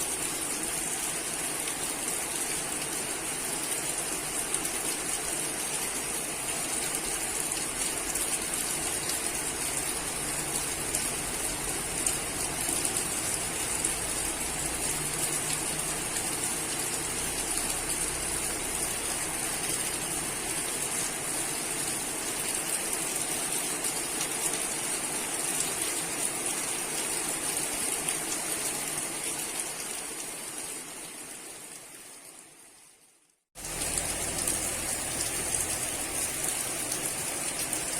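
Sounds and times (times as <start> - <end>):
rushing rain or running water: 0.0 - 37.9.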